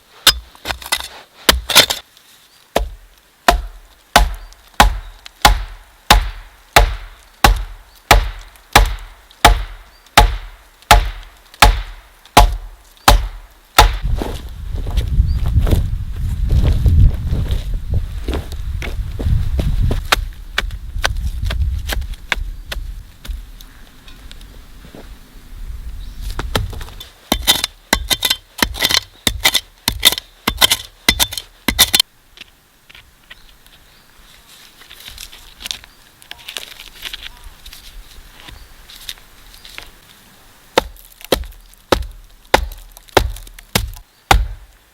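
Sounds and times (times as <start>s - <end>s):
tool striking wood: 2.8s - 14.1s, 40.8s - 44.6s.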